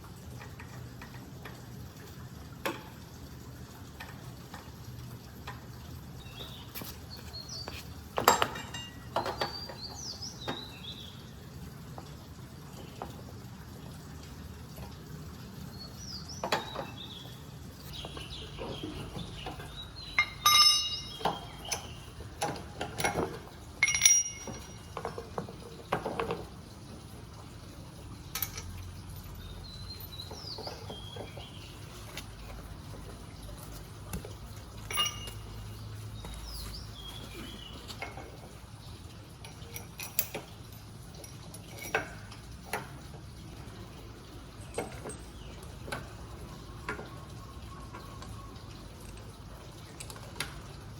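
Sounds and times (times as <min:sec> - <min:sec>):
birds chirping faintly: 0:05.6 - 0:50.7
metal tools clinking: 0:08.2 - 0:09.9, 0:18.0 - 0:26.4, 0:28.3 - 0:32.2, 0:34.5 - 0:38.6, 0:39.4 - 0:42.9.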